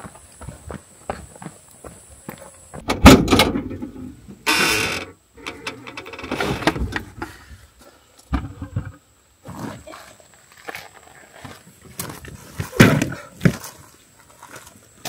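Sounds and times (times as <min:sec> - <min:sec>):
thump: 0:02.8 - 0:03.9.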